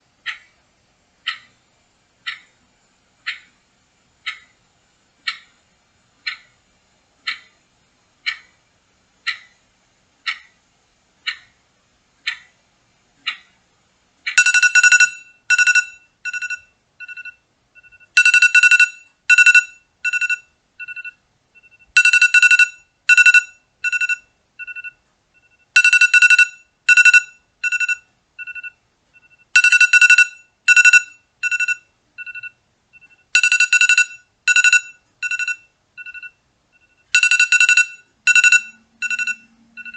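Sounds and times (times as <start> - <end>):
two-pitch electronic alarm beeping: 14.4 - 39.9.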